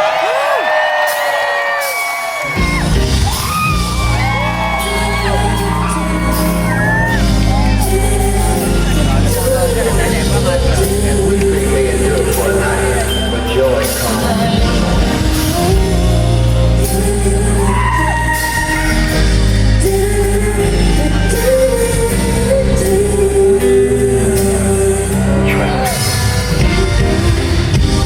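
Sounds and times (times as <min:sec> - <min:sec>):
crowd shouting: 0:00.0 - 0:15.8
live band playing: 0:00.0 - 0:28.0
woman singing: 0:03.5 - 0:28.0.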